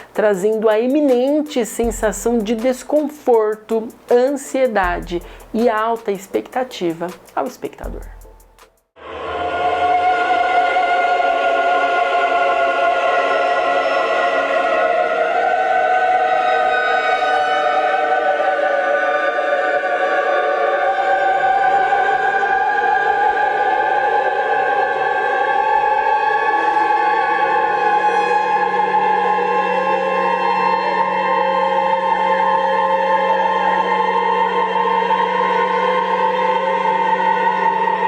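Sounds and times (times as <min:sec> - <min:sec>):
choir holding a chord: 0:08.4 - 0:38.0.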